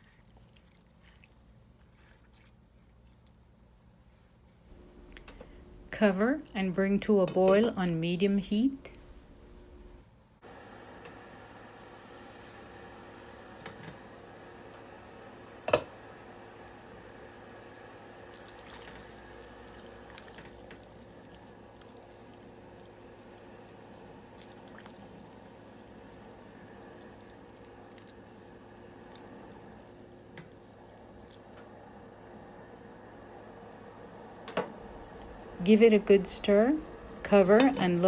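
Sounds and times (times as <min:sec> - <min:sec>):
pot heating with watery sounds: 0:00.0 - 0:03.7, 0:10.4 - 0:38.0.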